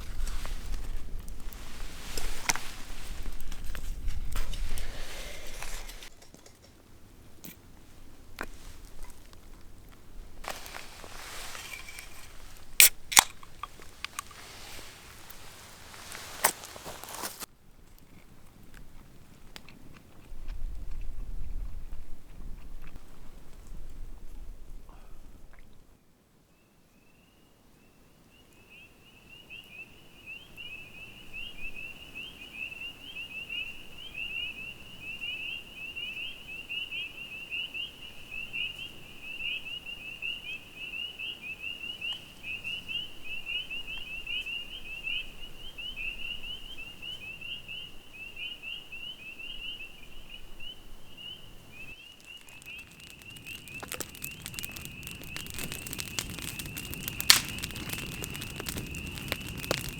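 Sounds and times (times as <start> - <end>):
sharp crackles: 0.0 - 6.7, 8.4 - 18.8, 51.7 - 59.9.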